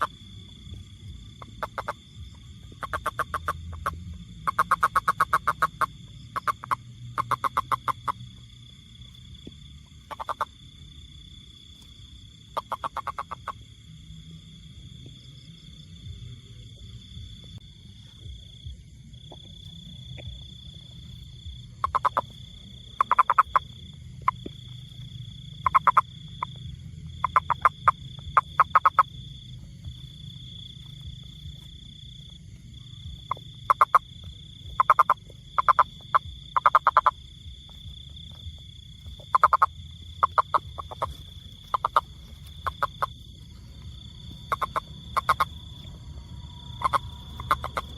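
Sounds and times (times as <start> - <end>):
frog calling in pulse bursts: 0.0 - 0.6, 1.3 - 8.4, 10.0 - 10.6, 12.4 - 13.7, 20.4 - 47.9
low rumble: 0.0 - 47.9.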